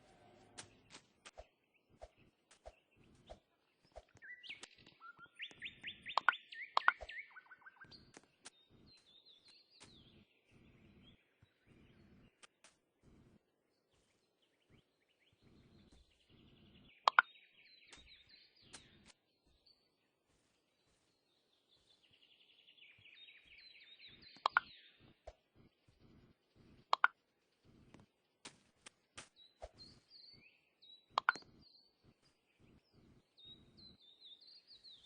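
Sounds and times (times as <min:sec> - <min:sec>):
small birds chirping: 0:00.0 - 0:35.0
sharp clicks: 0:24.4 - 0:24.7, 0:26.9 - 0:27.1, 0:31.1 - 0:31.6.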